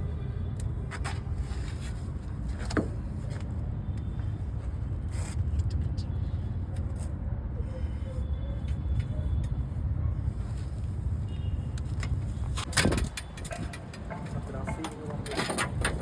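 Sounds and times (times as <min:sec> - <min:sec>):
knocks and scrapes: 0:11.9 - 0:16.0.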